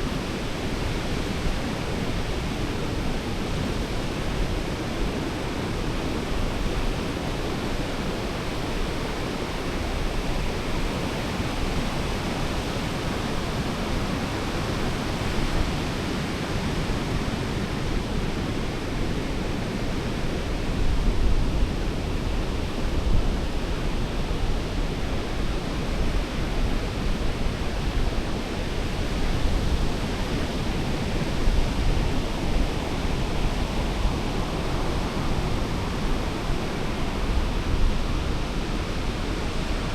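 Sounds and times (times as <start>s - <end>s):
surf rushing on a beach: 0.0s - 39.9s.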